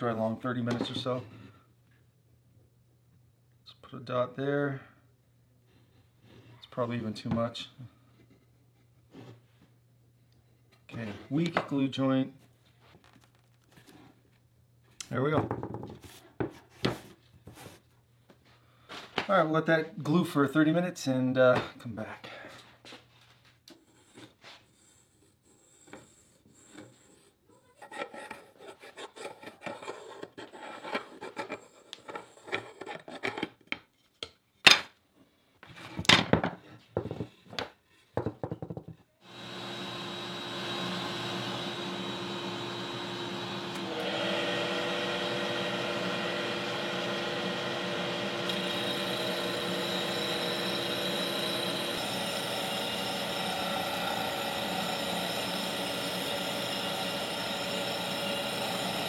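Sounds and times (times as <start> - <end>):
wooden pieces knocked and rubbed: 27.8 - 34.8, 35.6 - 39.1
power tool running: 39.2 - 59.0.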